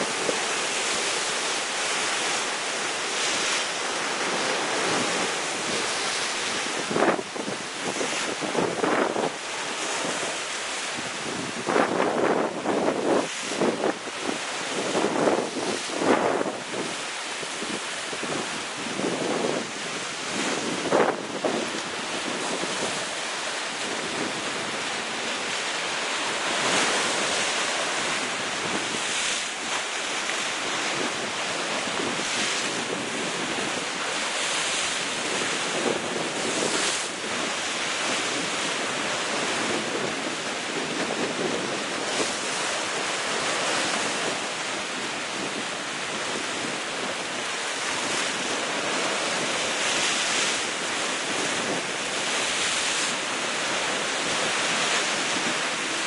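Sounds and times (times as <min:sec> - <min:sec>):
sea waves breaking against rocks: 0:00.0 - 0:56.0.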